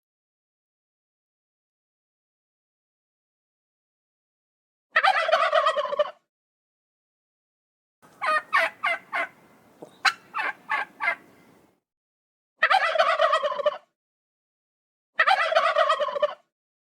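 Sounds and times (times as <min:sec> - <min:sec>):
turkey gobbling: 0:05.0 - 0:06.2, 0:08.1 - 0:11.6, 0:12.6 - 0:13.8, 0:15.2 - 0:16.4.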